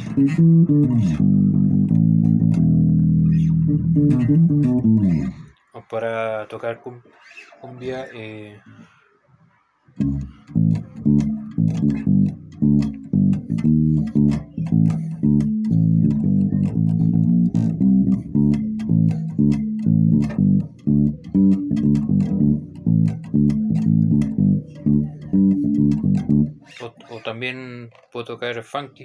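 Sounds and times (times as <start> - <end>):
electric bass guitar plucking: 0.0 - 5.6, 10.0 - 27.4.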